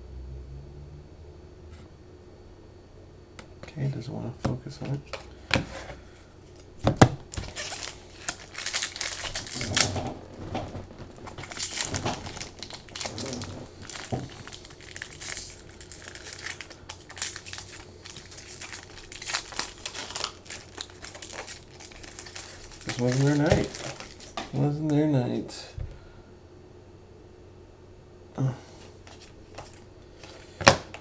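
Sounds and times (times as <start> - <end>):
card wrappers tearing and crinkling: 6.5 - 24.7.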